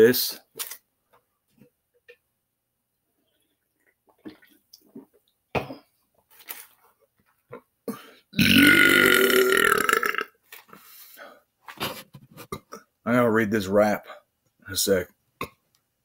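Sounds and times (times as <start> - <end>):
man belching: 8.4 - 10.4.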